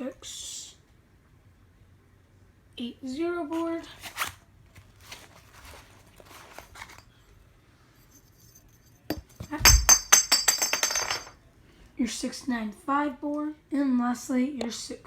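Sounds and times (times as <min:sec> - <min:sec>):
metal parts rustling and knocking: 0:08.0 - 0:11.4
metal pieces clinking: 0:08.2 - 0:11.4.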